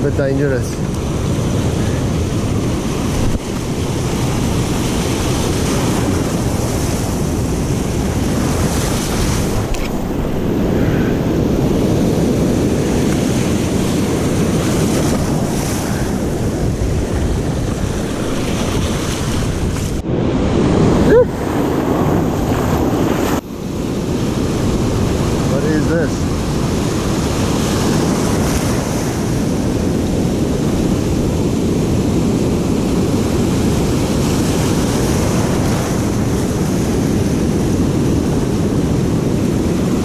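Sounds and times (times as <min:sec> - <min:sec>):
wind buffeting microphone: 0:00.0 - 0:40.0
surf breaking against rocks: 0:00.2 - 0:23.4.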